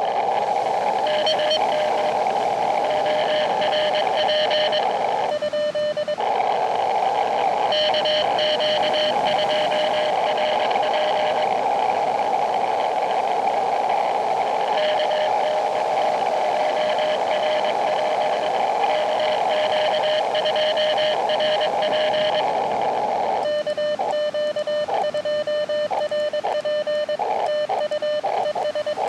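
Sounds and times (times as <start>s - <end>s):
radio band hiss: 0.0s - 29.0s
morse code tone: 1.0s - 6.3s, 7.6s - 11.5s, 14.5s - 22.5s, 23.4s - 29.0s.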